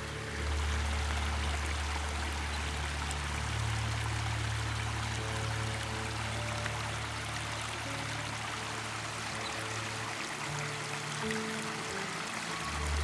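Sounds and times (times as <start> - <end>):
stream rushing: 0.0 - 13.0.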